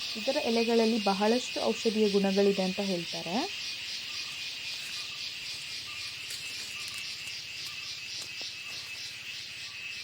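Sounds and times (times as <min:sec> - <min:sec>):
insects calling: 0:00.0 - 0:10.0.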